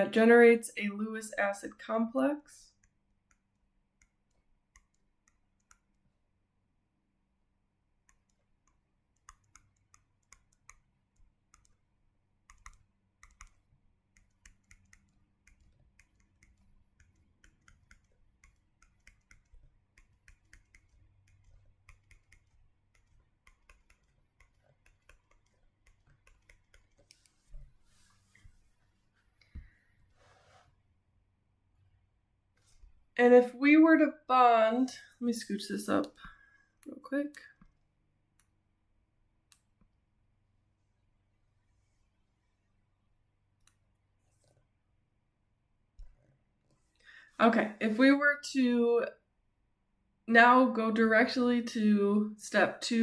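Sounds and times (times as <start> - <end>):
faint small clicks and taps: 2.7 - 6.1, 8.0 - 11.8, 12.4 - 28.6, 39.5 - 40.0.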